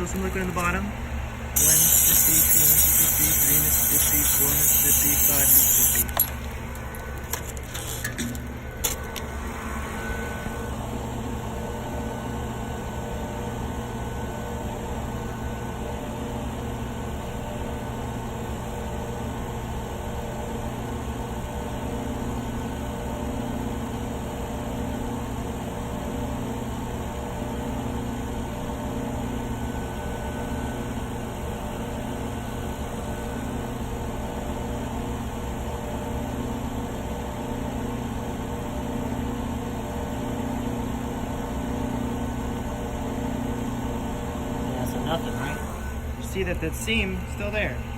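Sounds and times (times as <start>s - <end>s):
vacuum pump humming: 0.0s - 11.3s, 44.3s - 47.9s.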